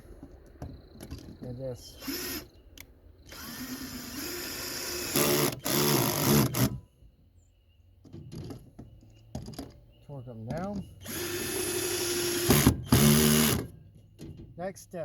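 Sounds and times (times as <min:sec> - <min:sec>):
power drill driving screws: 0:02.0 - 0:02.5, 0:03.3 - 0:06.8, 0:11.0 - 0:13.7.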